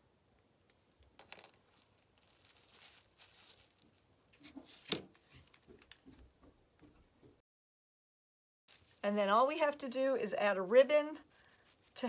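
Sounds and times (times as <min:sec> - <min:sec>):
soft rustle of craft pieces: 0:00.2 - 0:07.4, 0:08.7 - 0:09.8, 0:10.8 - 0:12.0.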